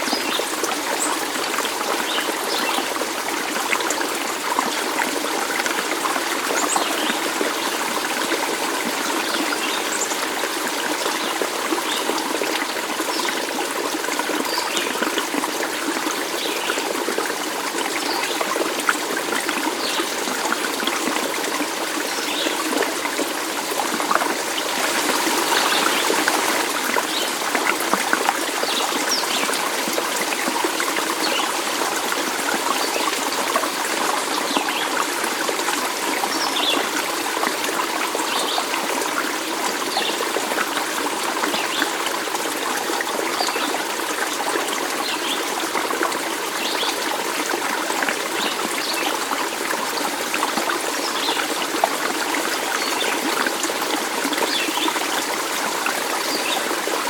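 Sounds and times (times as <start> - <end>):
stream water babbling: 0.0 - 57.0.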